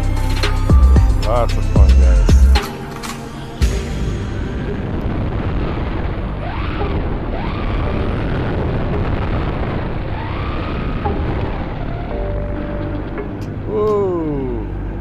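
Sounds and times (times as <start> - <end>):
steady rushing noise: 2.6 - 13.8.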